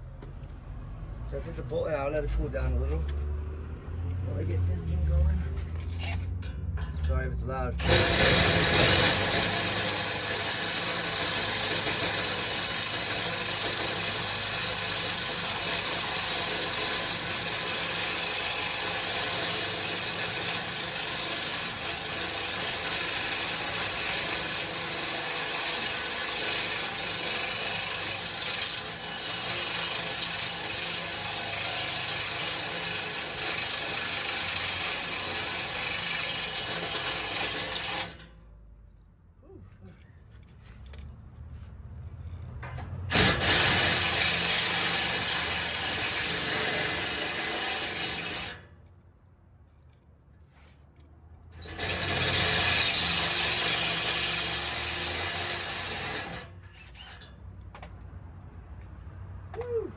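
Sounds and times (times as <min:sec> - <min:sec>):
power tool on metal: 0:07.7 - 0:38.4, 0:43.1 - 0:48.7, 0:51.6 - 0:57.3.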